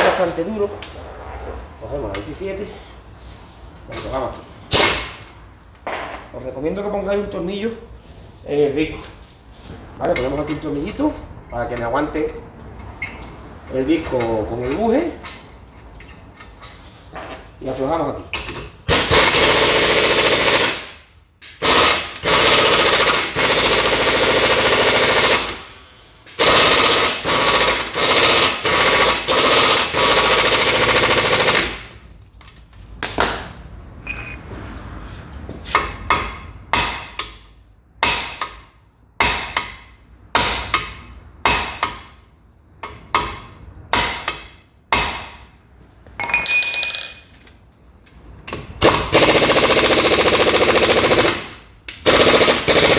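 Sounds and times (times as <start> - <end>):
pneumatic impact wrench hammering: 4.7 - 5.4, 18.4 - 32.0, 35.7 - 42.2, 42.8 - 45.5, 48.4 - 52.9.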